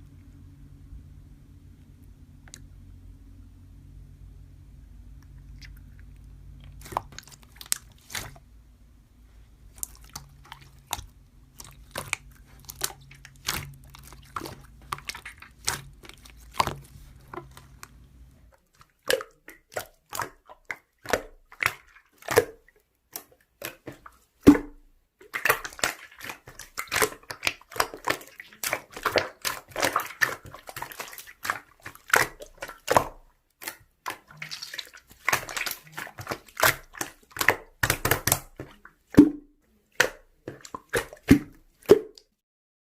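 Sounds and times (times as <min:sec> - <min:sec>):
low hum: 0:00.0 - 0:06.8.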